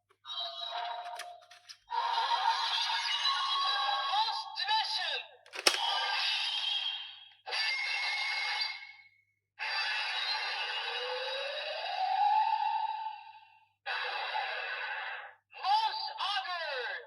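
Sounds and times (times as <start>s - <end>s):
sharp click: 5.5s - 5.9s.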